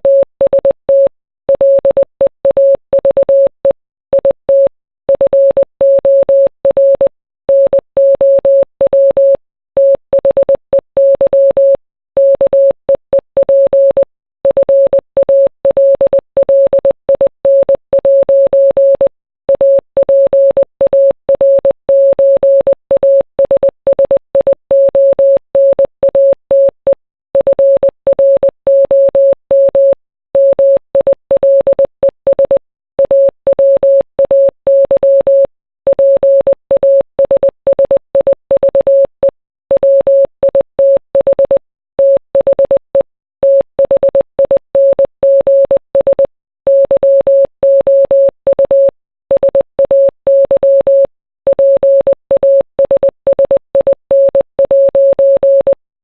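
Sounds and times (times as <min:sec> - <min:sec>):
morse code beeps: 0:00.0 - 0:55.8.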